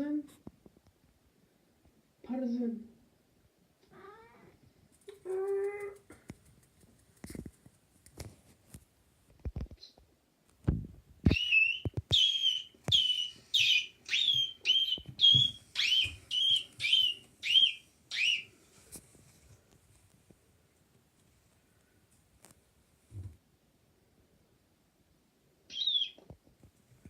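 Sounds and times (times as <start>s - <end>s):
cat chirping: 11.3s - 18.5s.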